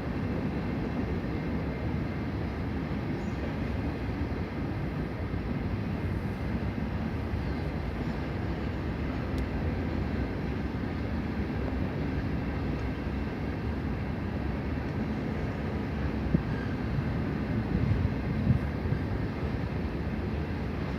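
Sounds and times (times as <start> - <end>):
freight train rumbling past: 0.0 - 20.9.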